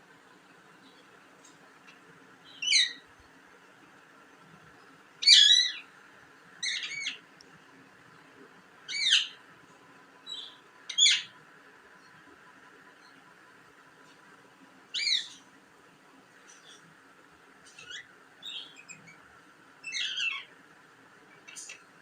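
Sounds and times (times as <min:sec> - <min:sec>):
parrot chirping: 0:02.4 - 0:03.0, 0:05.2 - 0:05.9, 0:06.6 - 0:07.2, 0:08.9 - 0:09.4, 0:10.3 - 0:11.4, 0:14.9 - 0:15.4, 0:19.8 - 0:20.5.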